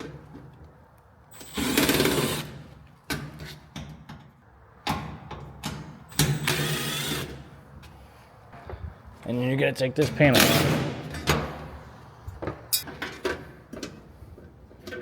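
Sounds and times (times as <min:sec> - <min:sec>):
power drill whirring: 0:01.4 - 0:02.6, 0:06.3 - 0:07.4.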